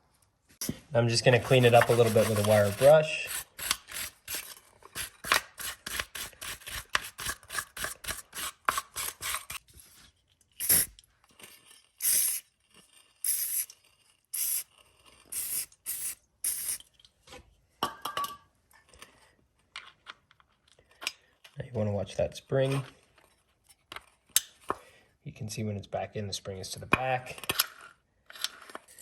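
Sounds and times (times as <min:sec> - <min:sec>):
wire brush scrubbing: 0:00.6 - 0:09.6.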